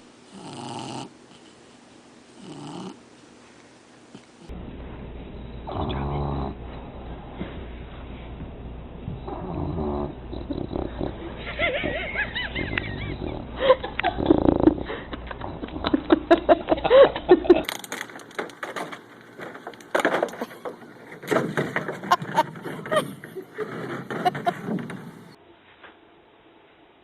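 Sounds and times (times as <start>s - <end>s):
knocks and clatter: 17.7s - 25.3s.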